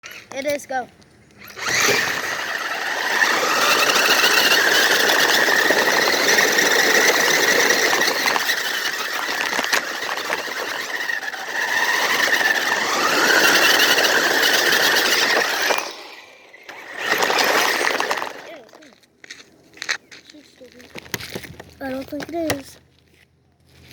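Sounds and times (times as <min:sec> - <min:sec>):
toy motor gear whine and grinding: 0:00.0 - 0:00.7, 0:01.4 - 0:18.8.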